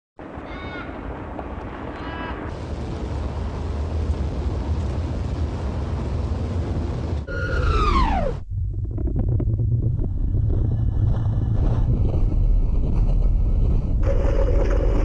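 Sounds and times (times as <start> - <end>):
pitch sliding down effect: 7.3 - 9.3
car rumble on road: 8.0 - 14.8.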